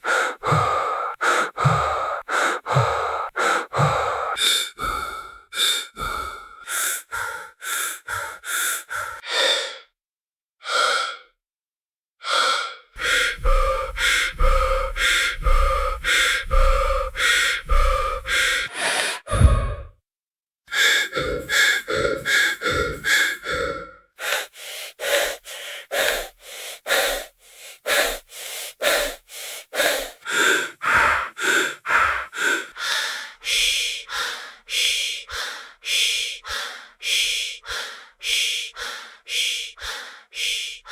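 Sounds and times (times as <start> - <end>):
heavy rapid breathing: 0.0 - 9.9, 12.2 - 20.0, 20.7 - 40.9
deep low rumble: 13.4 - 18.6, 19.3 - 19.9
low thud: 19.3 - 19.9.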